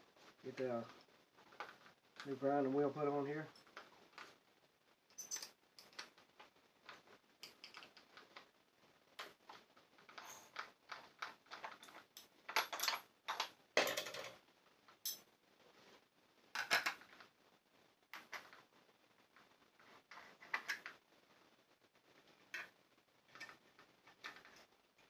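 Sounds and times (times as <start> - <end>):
metal parts and tools clinking: 5.1 - 6.1, 10.1 - 14.4, 15.0 - 15.3, 23.3 - 24.7.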